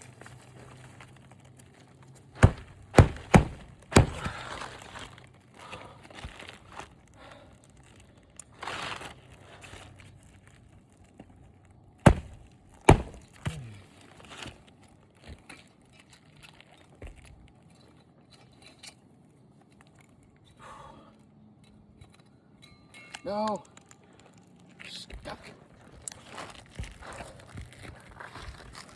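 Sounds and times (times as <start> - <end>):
sharp loud knocks: 2.4 - 4.3, 12.1 - 13.3.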